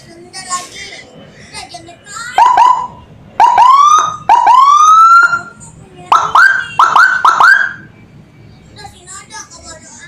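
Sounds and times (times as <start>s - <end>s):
electronic siren yelp tones: 2.4s - 7.9s.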